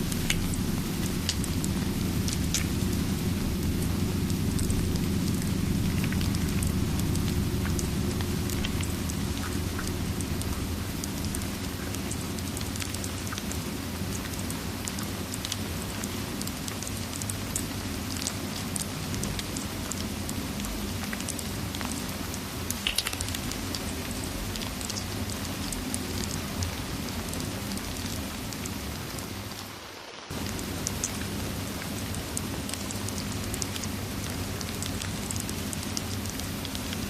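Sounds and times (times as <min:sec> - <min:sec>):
low rumble: 0:00.0 - 0:15.6
fireplace crackling and popping: 0:00.0 - 0:19.2, 0:20.2 - 0:23.8
steady rain: 0:00.0 - 0:37.0.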